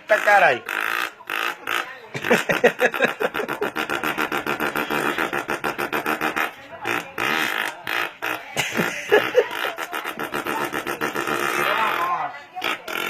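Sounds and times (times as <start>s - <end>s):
boy imitating motorcycle engine: 0.6s - 13.0s.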